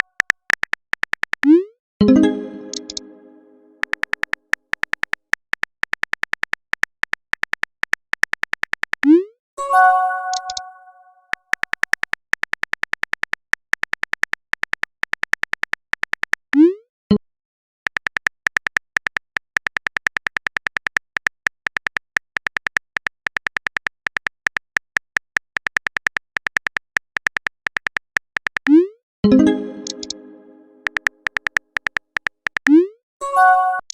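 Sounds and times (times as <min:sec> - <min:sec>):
synthetic typing ticks: 0:00.0 - 0:09.3, 0:10.2 - 0:10.8, 0:17.9 - 0:32.9
rising bloop message sound: 0:02.0 - 0:03.8, 0:29.3 - 0:31.1
brief chime: 0:09.6 - 0:11.2.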